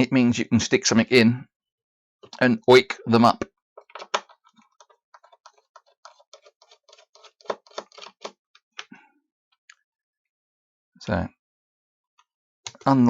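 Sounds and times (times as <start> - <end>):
small plastic clicks and taps: 3.8 - 9.0.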